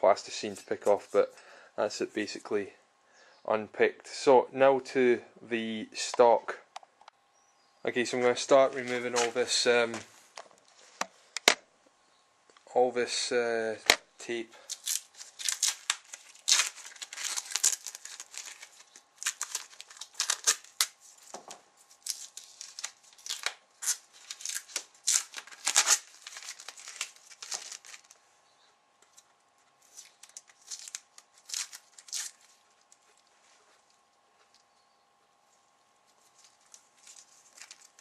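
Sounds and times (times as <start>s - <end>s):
tape ripping off: 14.6s - 28.2s, 29.8s - 33.3s, 36.4s - 38.0s.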